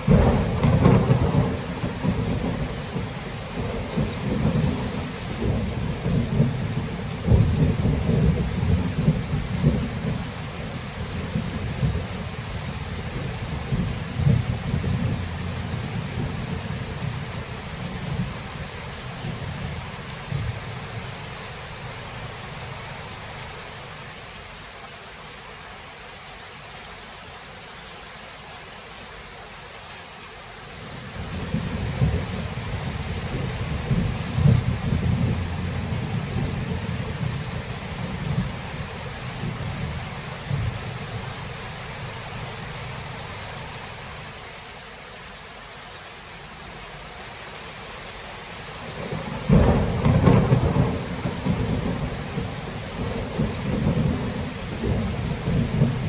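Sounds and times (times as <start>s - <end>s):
rolling thunder: 0.0s - 10.3s, 11.0s - 18.6s, 31.2s - 41.3s, 48.9s - 56.0s
rain hiss: 0.0s - 56.0s.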